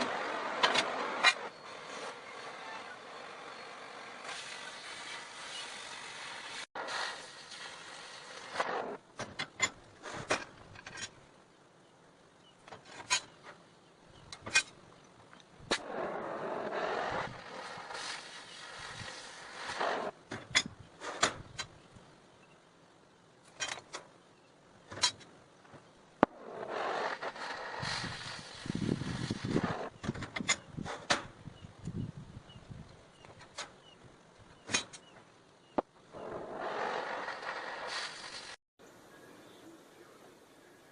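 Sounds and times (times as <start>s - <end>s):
scraping noise: 0.0s - 9.0s, 15.7s - 20.2s, 26.2s - 31.0s, 36.1s - 38.6s
steel parts clanking: 12.7s - 13.6s, 14.3s - 14.8s, 34.6s - 35.2s.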